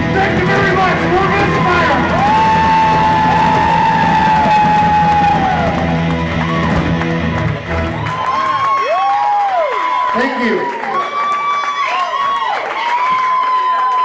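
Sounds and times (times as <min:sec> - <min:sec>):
bass guitar: 0:00.0 - 0:08.7
electric guitar bending notes: 0:00.0 - 0:08.8
drums: 0:00.0 - 0:09.3.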